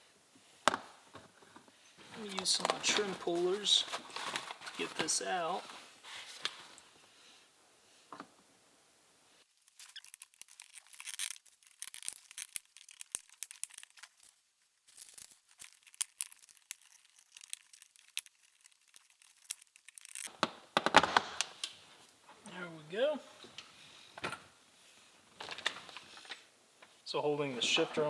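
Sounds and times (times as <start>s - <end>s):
plastic trim creaking and crackling: 2.1s - 5.6s, 9.7s - 14.3s, 14.9s - 21.7s, 25.4s - 26.4s
clips clicking and snapping: 9.7s - 14.1s, 15.0s - 20.5s.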